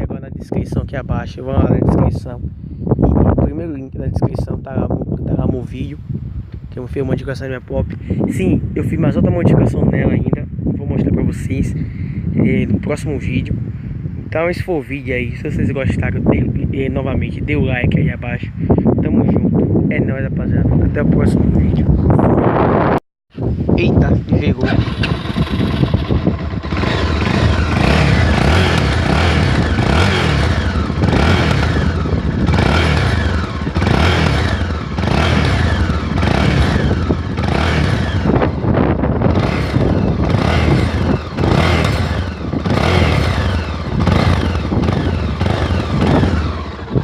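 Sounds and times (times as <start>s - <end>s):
motorcycle engine revving: 24.6s - 47.0s.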